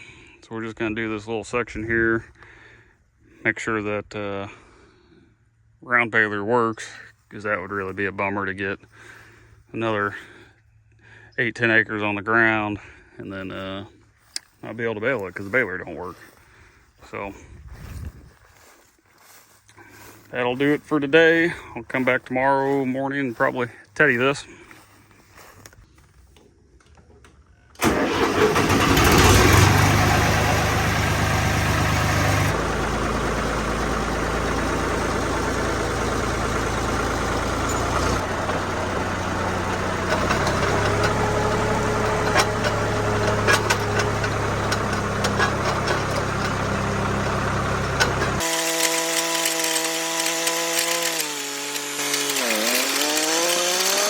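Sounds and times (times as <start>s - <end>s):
tractor engine running: 27.8s - 54.0s.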